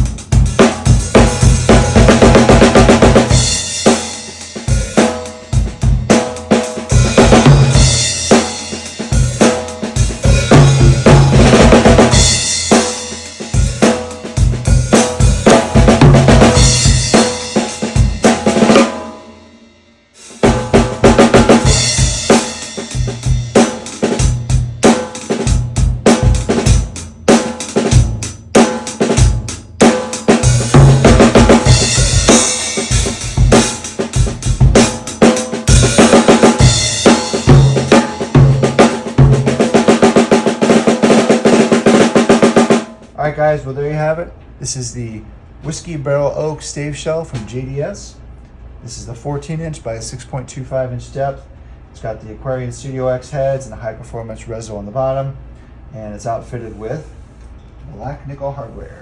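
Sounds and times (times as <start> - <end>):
snare drum: 0.0 - 19.1, 20.3 - 43.1
cymbals: 0.0 - 43.2
hi-hat: 21.5 - 39.7.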